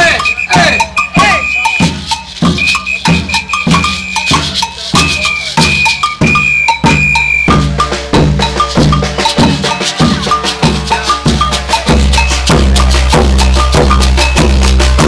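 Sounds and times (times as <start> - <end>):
deep bass drums: 0.0 - 15.0
high held tone: 0.0 - 15.0
percussion ensemble drumming: 0.0 - 15.0
shakers: 0.0 - 15.0.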